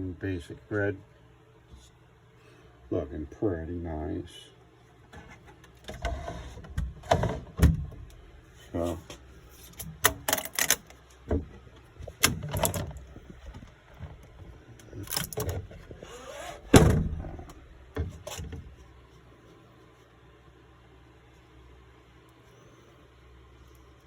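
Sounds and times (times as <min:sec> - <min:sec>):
knocks and clunks from handling: 0:09.8 - 0:15.9.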